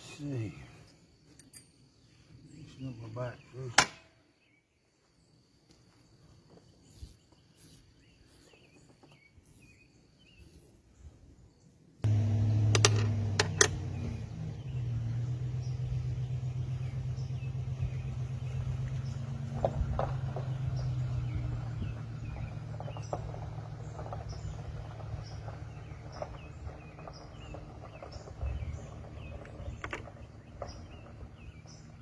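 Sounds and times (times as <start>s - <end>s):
faint insect chirping: 0.0s - 12.6s
machine humming: 12.0s - 19.1s.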